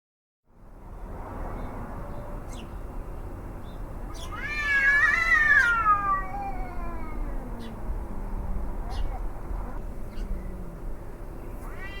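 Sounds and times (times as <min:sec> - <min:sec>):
cat howling: 0:04.2 - 0:07.8, 0:11.6 - 0:12.0.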